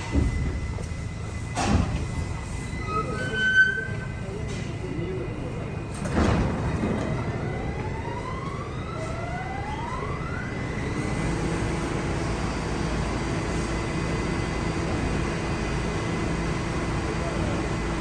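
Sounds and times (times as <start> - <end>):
subway train motors whining: 0.0 - 18.0.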